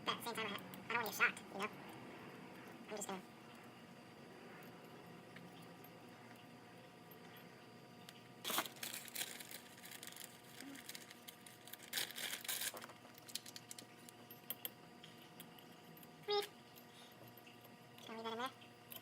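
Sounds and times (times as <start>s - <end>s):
hands crinkling and rustling: 8.4s - 13.9s.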